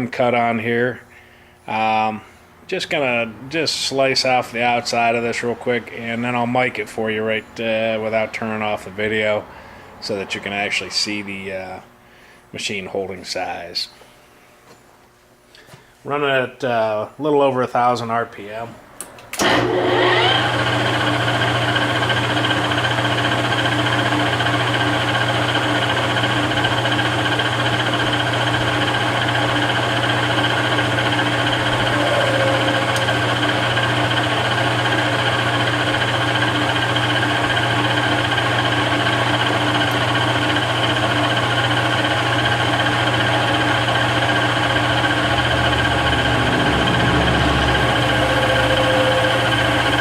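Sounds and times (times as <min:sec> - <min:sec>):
lathe humming and whining: 0:19.4 - 0:50.0
deeper hum: 0:30.3 - 0:35.1, 0:43.4 - 0:50.0.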